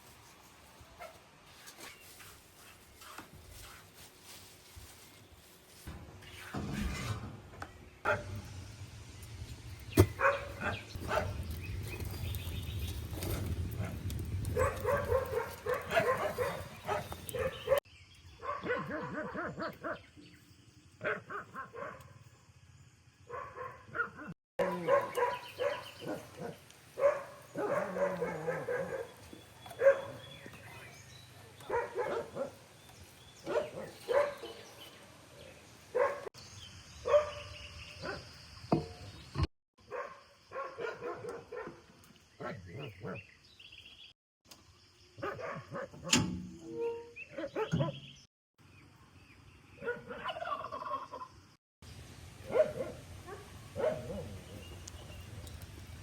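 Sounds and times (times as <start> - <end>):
dog barking: 8.1 - 8.4, 10.2 - 11.4, 13.8 - 17.8, 18.4 - 20.0, 21.0 - 22.2, 23.3 - 30.4, 31.6 - 32.6, 33.4 - 34.8, 35.9 - 36.3, 37.0 - 38.3, 39.9 - 43.2, 45.2 - 46.1, 47.4 - 48.0, 49.8 - 50.4, 52.5 - 54.5.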